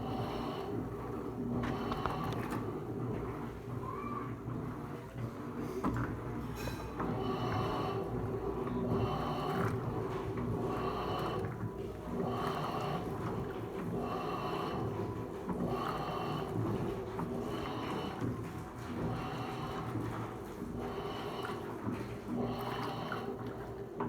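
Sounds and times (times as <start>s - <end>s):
washing machine agitator swishing: 0.0s - 24.0s.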